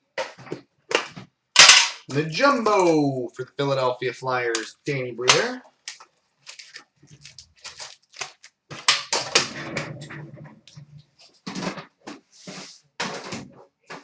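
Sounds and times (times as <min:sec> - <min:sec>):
cards and wrappers rustling: 0:04.6 - 0:09.5.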